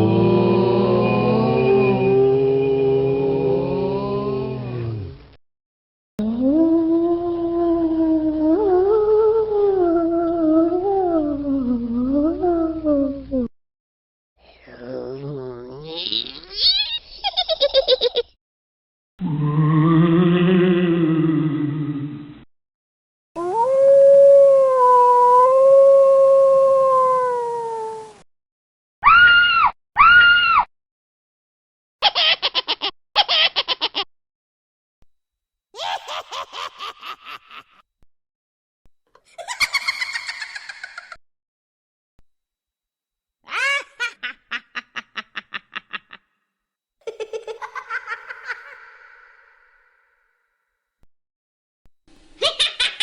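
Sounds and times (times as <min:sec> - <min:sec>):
high-pitched cackling laugh: 0:16.6 - 0:18.4, 0:32.0 - 0:34.1, 0:35.8 - 0:37.8, 0:39.2 - 0:41.2, 0:43.5 - 0:46.3, 0:47.0 - 0:49.5, 0:52.4 - 0:53.0.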